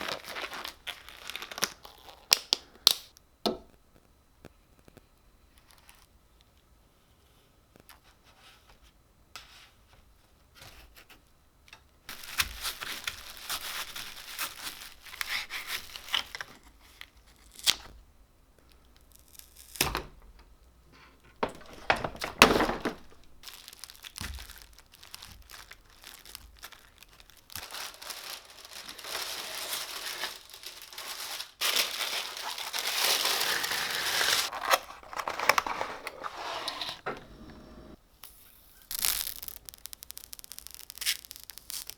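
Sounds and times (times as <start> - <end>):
crinkling and tearing: 0.0 - 3.0, 12.1 - 18.0, 18.6 - 20.4, 21.3 - 37.1, 38.7 - 41.9.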